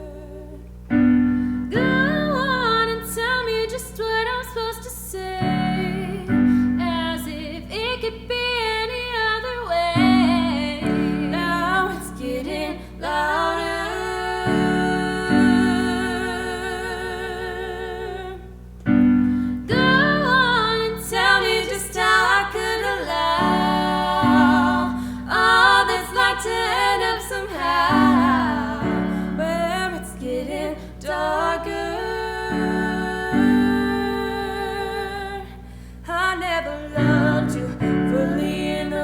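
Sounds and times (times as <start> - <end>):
woman singing: 0.0 - 0.8, 1.7 - 18.6, 19.6 - 39.0
keyboard chords: 18.8 - 31.3.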